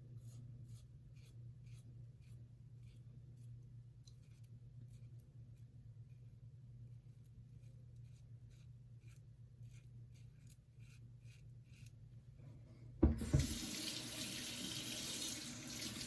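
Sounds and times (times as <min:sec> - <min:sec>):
razor scratching on stubble: 0:00.1 - 0:06.3, 0:06.9 - 0:12.1
faucet water running into sink: 0:13.0 - 0:16.0.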